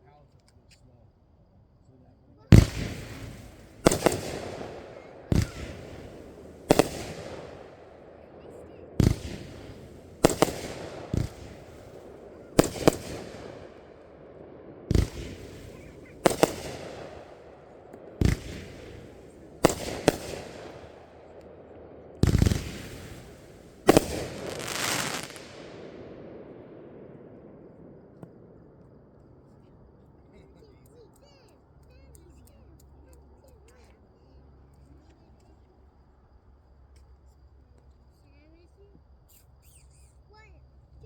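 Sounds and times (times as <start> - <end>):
fireworks crackling hiss: 2.5 - 27.0
fireworks bangs: 2.5 - 28.8.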